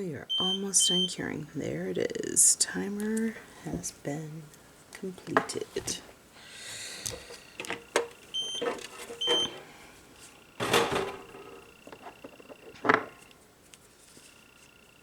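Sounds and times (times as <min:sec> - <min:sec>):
short electronic beeps: 0:00.3 - 0:01.1, 0:08.4 - 0:09.6
handling clicks and knocks: 0:07.1 - 0:09.7, 0:10.6 - 0:13.4.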